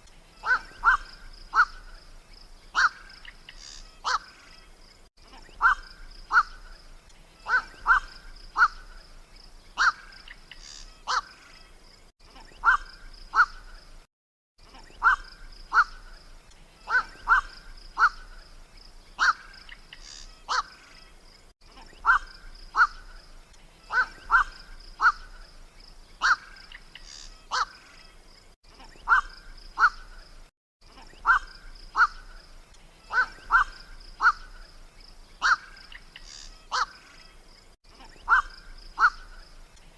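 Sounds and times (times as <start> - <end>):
heron harsh calls: 0.4 - 1.9, 2.8 - 4.3, 19.2 - 20.8, 22.0 - 23.1, 26.2 - 27.8, 29.0 - 30.1, 31.2 - 32.3, 33.1 - 34.6, 35.4 - 37.0, 38.2 - 39.4.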